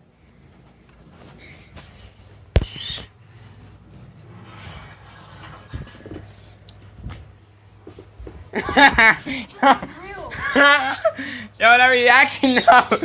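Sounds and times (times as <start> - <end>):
sharp click: 0.9 - 4.0
bird chirping: 0.9 - 13.0.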